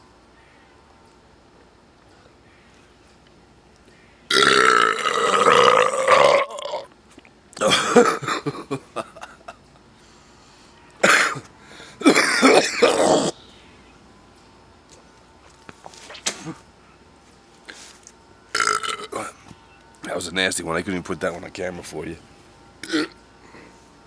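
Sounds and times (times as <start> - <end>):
man belching: 4.3 - 6.9, 12.0 - 13.4, 18.6 - 19.4, 22.8 - 23.2.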